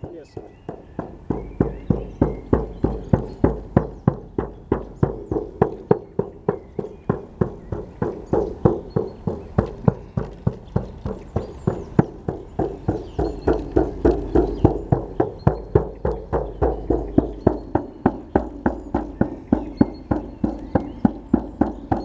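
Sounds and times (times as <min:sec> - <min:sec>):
frame drum beaten: 0:00.0 - 0:22.0.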